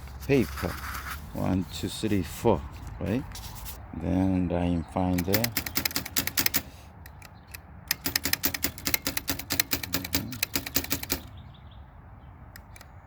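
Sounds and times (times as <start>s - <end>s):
typewriter mechanism clicking: 5.1s - 11.3s, 12.6s - 12.9s.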